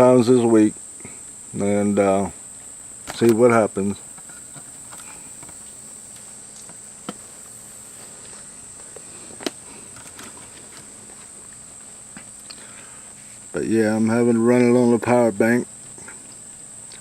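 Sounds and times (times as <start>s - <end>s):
high-pitched insect chorus: 0.0s - 17.0s.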